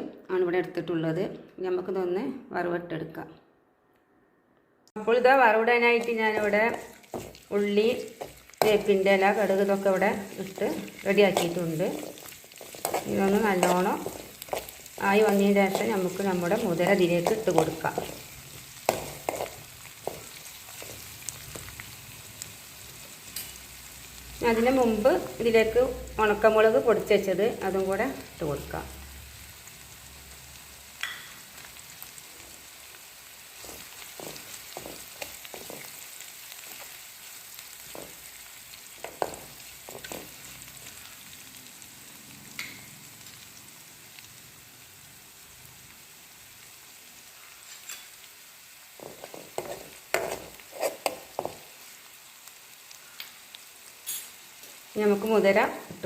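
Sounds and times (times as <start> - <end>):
oil sizzling in a pan: 5.0 - 56.0
spoon scraping against a pan: 6.0 - 21.6, 33.5 - 37.0, 38.9 - 40.6, 49.0 - 51.6, 54.0 - 54.4.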